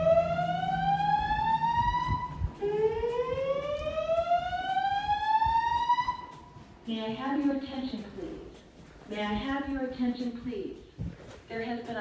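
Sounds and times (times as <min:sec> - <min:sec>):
fire alarm whoop tone: 0:00.0 - 0:06.4.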